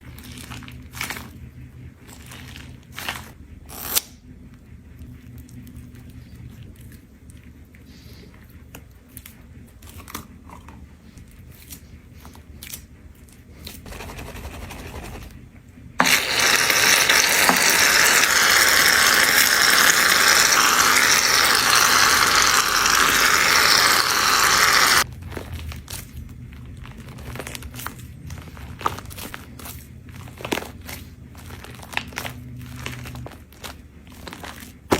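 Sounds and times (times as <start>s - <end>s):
small motor running: 16.0s - 25.1s.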